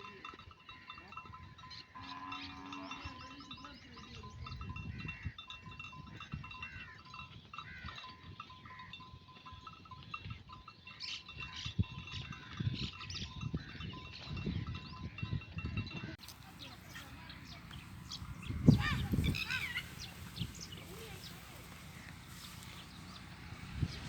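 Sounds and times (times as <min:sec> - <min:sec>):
sheep bleating: 0:16.3 - 0:23.6.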